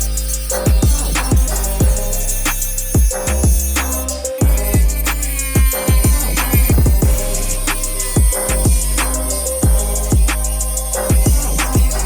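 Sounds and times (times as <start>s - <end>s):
hi-hat ticks: 0.0s - 12.0s
deep kick drums: 0.7s - 2.1s, 3.0s - 3.8s, 4.4s - 5.0s, 5.6s - 7.3s, 8.2s - 12.0s.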